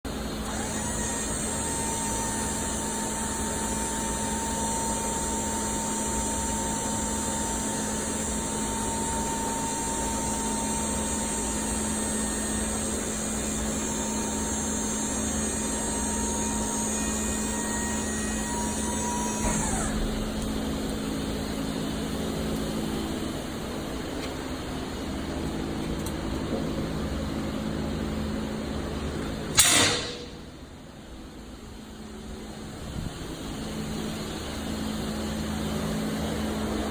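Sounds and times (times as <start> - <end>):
electric motor humming and whining: 0.2 - 22.6.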